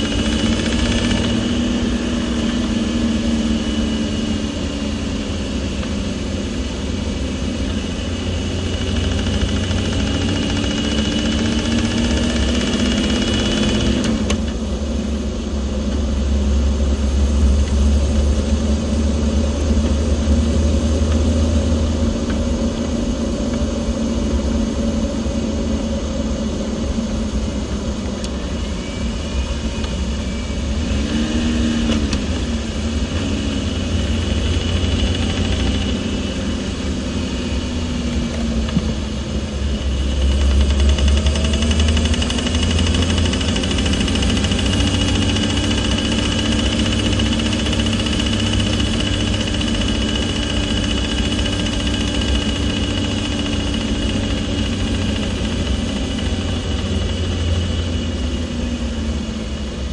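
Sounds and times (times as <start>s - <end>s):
truck engine rumbling: 0.0s - 59.9s
transmission knocking: 7.4s - 14.7s, 29.5s - 36.6s, 37.9s - 58.3s.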